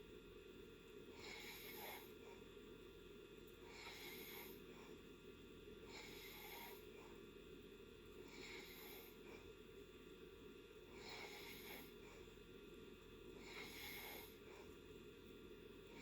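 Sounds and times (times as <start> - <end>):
person snoring softly: 1.1 - 2.5, 3.6 - 5.0, 5.8 - 7.2, 8.2 - 9.5, 10.8 - 12.4, 13.3 - 14.8.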